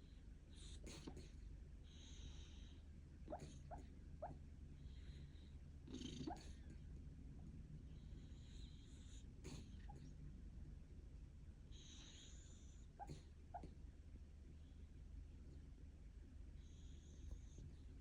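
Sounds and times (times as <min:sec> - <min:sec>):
dog snoring faintly: 0:00.5 - 0:07.0, 0:07.9 - 0:10.2, 0:11.7 - 0:13.8, 0:16.5 - 0:18.0.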